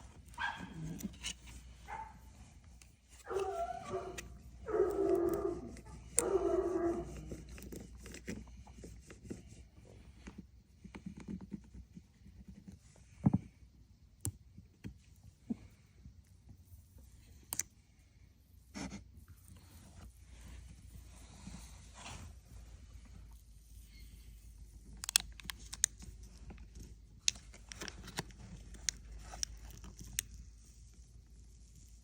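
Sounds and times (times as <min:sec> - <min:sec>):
dog whining: 0:03.3 - 0:07.3.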